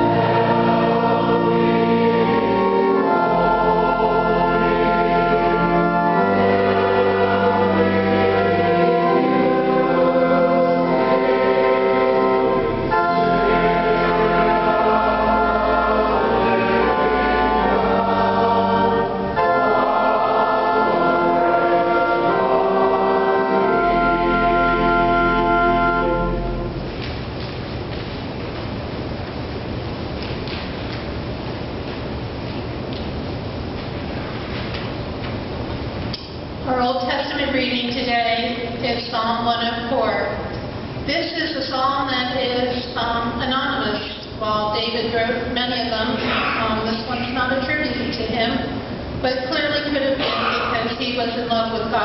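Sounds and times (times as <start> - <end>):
voices singing a hymn: 0.0 - 26.6
organ playing: 0.0 - 27.0.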